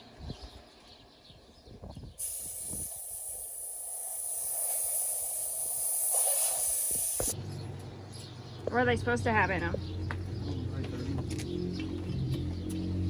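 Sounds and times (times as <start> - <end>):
steady hiss: 2.2 - 7.4.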